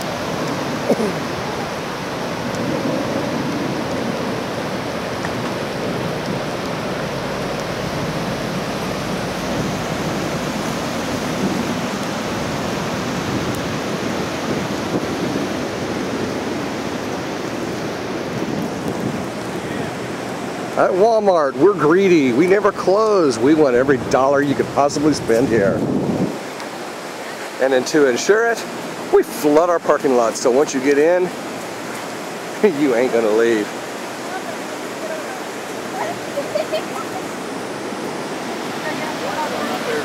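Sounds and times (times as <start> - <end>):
floodwater rushing: 0.0 - 40.0.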